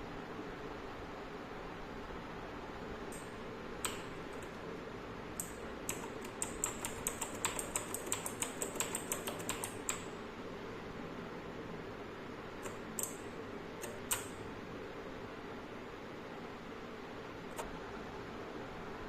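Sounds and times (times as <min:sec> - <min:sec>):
keyboard switch clicks: 0:03.1 - 0:04.6, 0:05.4 - 0:10.1, 0:12.6 - 0:13.2, 0:13.8 - 0:14.4.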